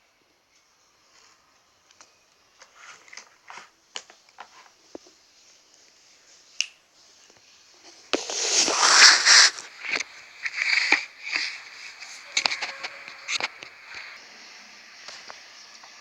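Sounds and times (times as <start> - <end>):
packaging rustling: 8.2 - 14.2.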